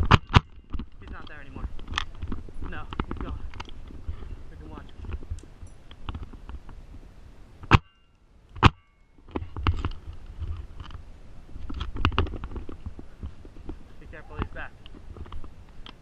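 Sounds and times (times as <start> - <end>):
sharp cracks: 0.0 - 3.8, 7.6 - 10.0
light rustling: 0.0 - 16.0.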